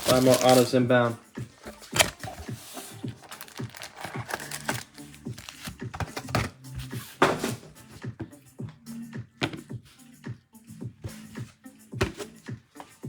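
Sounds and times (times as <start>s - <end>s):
plastic wrappers crinkling: 0.0s - 0.9s, 1.7s - 6.3s
quiet background music: 0.0s - 13.0s.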